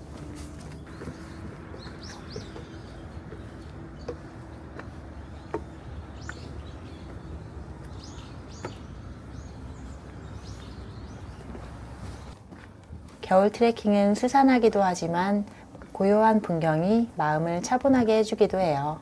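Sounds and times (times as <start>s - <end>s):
footsteps on steps: 0.0s - 13.3s
low steady background rumble: 0.0s - 19.0s
small birds chirping: 0.2s - 12.4s.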